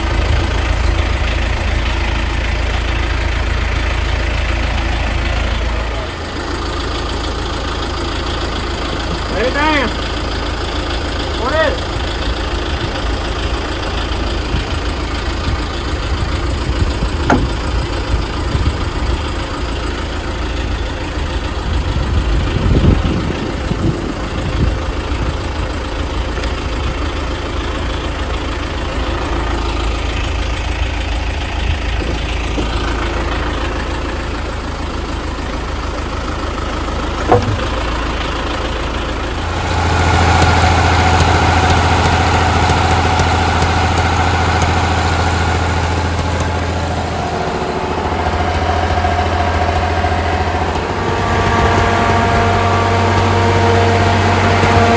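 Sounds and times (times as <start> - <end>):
heavy engine idling: 0.0 - 54.9.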